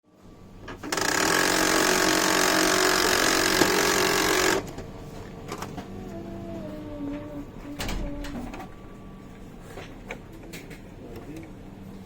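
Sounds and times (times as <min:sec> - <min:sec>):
printer running: 0:00.6 - 0:06.1
printer grinding noise: 0:00.7 - 0:04.8.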